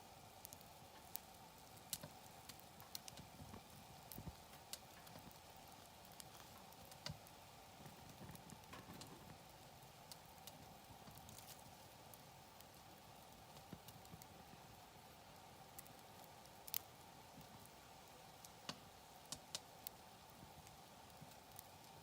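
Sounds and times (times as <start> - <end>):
campfire crackling and popping: 0.0 - 22.0
faint steady hiss: 0.0 - 22.0.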